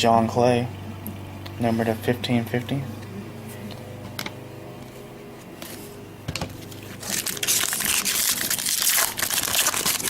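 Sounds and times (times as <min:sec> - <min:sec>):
wrapper crinkling: 0:06.6 - 0:10.0.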